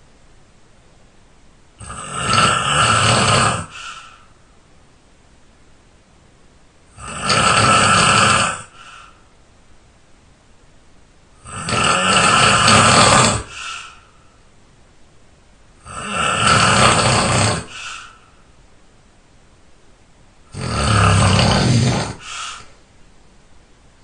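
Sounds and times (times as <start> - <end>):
rasping snores: 1.8 - 4.2, 6.9 - 9.2, 11.4 - 14.0, 15.8 - 18.2, 20.5 - 22.7
faint breath: 3.6 - 4.6, 8.6 - 9.4, 13.4 - 14.5, 17.5 - 18.6, 21.9 - 22.8.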